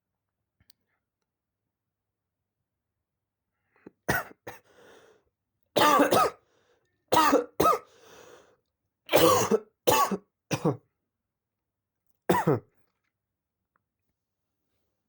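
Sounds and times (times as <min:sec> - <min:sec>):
person coughing: 0:04.1 - 0:04.6, 0:05.8 - 0:06.4, 0:07.1 - 0:07.9, 0:09.1 - 0:10.8, 0:12.3 - 0:12.6
faint breaths: 0:07.9 - 0:08.6.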